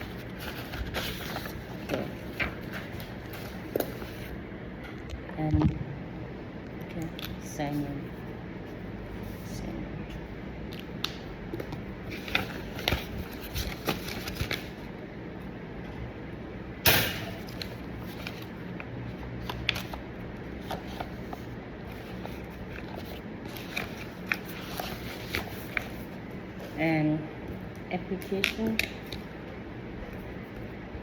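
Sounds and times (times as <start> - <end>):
paper rustling and clicking: 0.1 - 4.3, 10.7 - 14.8, 17.4 - 20.0, 20.6 - 26.1, 28.2 - 29.2.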